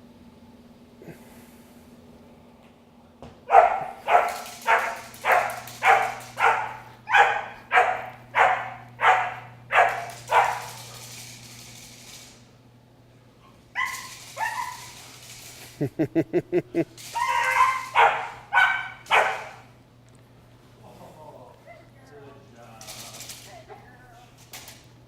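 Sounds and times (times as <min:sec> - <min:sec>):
puppy barking sharply: 0:03.5 - 0:10.8, 0:13.8 - 0:15.0, 0:17.2 - 0:19.7.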